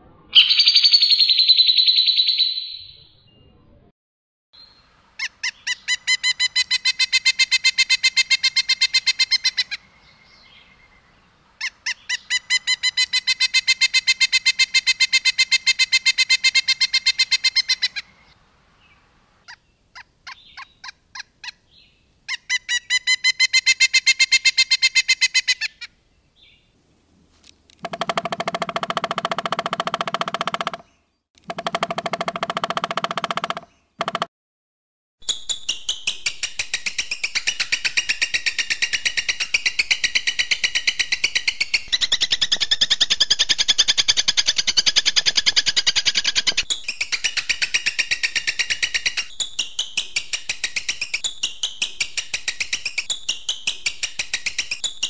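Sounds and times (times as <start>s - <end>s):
bird rapid trills: 27.8s - 30.9s.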